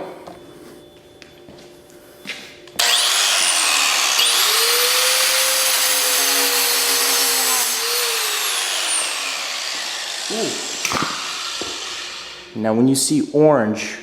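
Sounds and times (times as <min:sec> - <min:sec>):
angle grinder grinding metal: 0:02.8 - 0:12.6.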